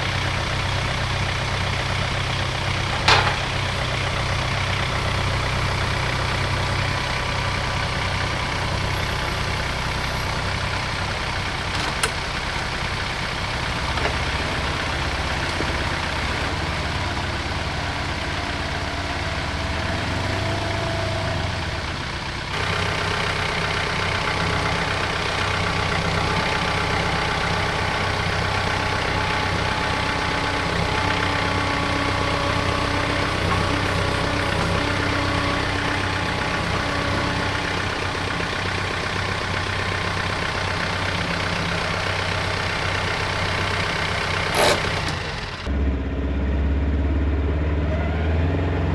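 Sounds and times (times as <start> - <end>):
tractor diesel engine running: 0.0 - 48.9.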